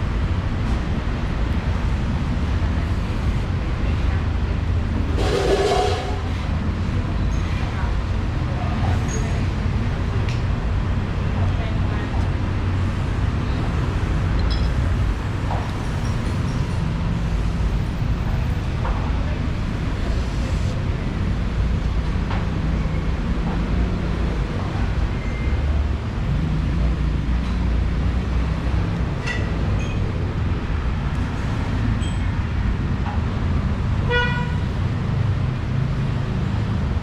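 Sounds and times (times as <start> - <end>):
road traffic rumble: 0.0 - 37.0
car horn toot: 5.2 - 6.4.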